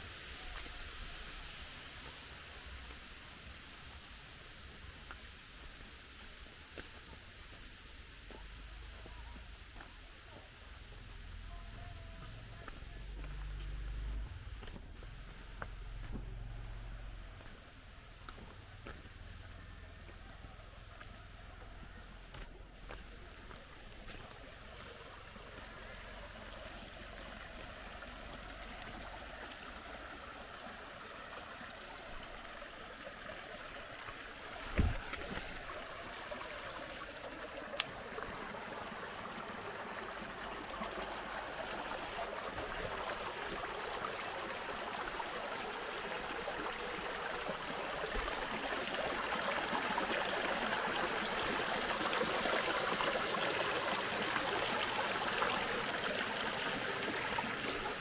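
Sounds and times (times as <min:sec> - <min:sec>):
stream water rushing: 0:12.1 - 0:17.8, 0:22.3 - 0:58.0
low thump: 0:34.7 - 0:35.3.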